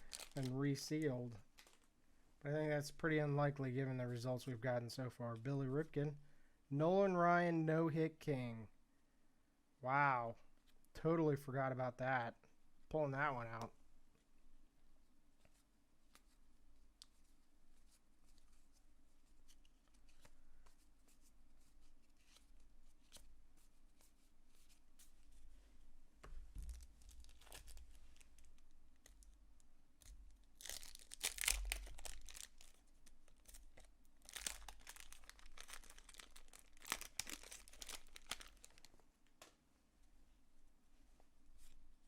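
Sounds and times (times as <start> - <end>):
wrapper tearing and crinkling: 0.0 - 0.6, 1.5 - 1.9, 26.7 - 29.3, 30.4 - 39.0.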